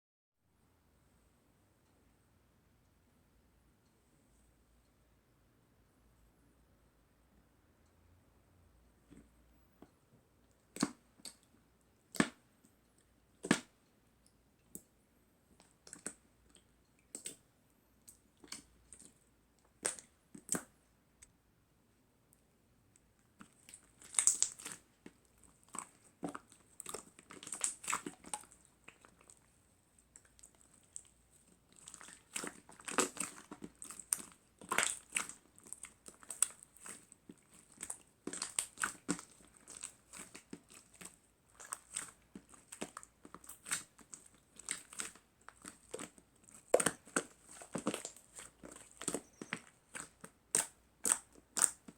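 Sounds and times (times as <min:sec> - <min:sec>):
slime crackling pops: 0:23.7 - 0:24.9, 0:31.8 - 0:51.9.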